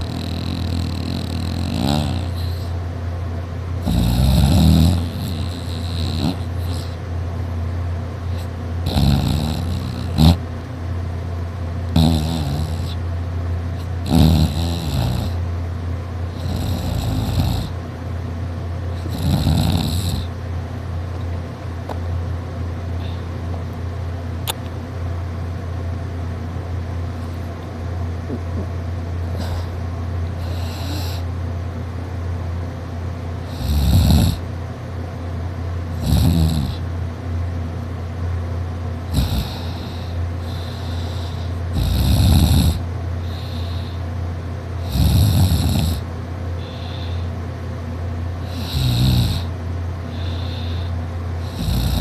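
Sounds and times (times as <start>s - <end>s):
man snoring: 0.0s - 2.8s, 3.8s - 7.0s, 8.4s - 10.4s, 11.9s - 13.0s, 13.8s - 15.4s, 16.3s - 17.8s, 19.0s - 20.3s, 29.3s - 29.8s, 30.4s - 31.3s, 33.4s - 34.4s, 36.0s - 36.8s, 39.1s - 44.0s, 44.8s - 47.3s, 48.4s - 49.5s, 50.1s - 52.0s
steady low hum: 0.0s - 52.0s.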